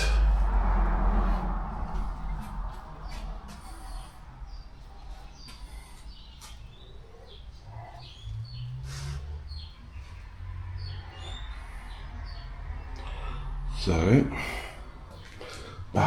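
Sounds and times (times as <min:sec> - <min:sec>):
low rumble: 0:00.0 - 0:06.3
small birds chirping: 0:01.9 - 0:16.0.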